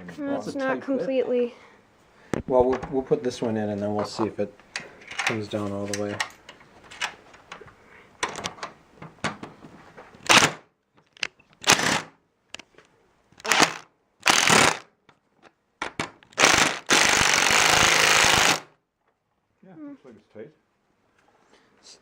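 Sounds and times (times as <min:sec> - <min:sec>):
impact driver running: 0:11.6 - 0:12.1, 0:13.4 - 0:14.8, 0:16.3 - 0:18.7.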